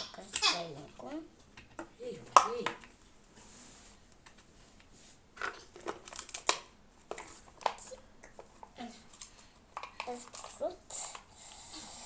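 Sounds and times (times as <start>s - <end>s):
packaging crinkling: 5.4s - 7.9s.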